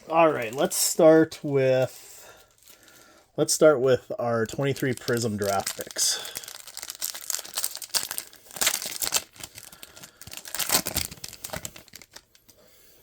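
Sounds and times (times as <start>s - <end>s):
wrapper tearing and crinkling: 2.6s - 3.0s, 4.5s - 12.5s.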